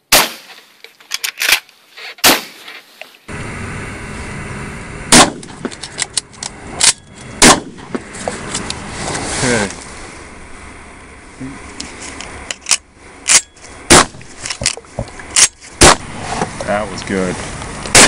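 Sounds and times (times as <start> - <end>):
shotgun shots: 0.1 - 0.5, 2.2 - 2.6, 5.1 - 5.7, 6.8 - 8.0, 13.3 - 14.7, 15.3 - 16.2
steady background hiss: 0.1 - 18.0.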